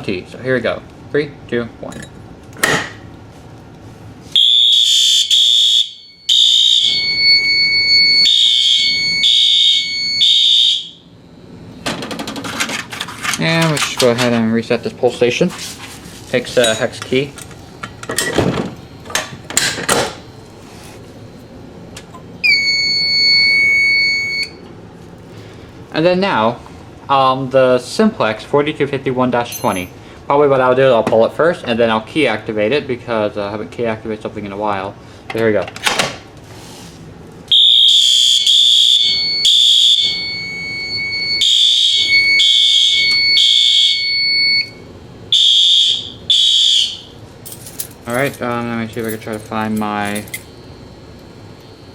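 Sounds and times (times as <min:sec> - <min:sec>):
fire alarm buzzer tone: 0:04.3 - 0:11.7, 0:22.4 - 0:24.6, 0:37.5 - 0:47.2, 0:50.0 - 0:51.9.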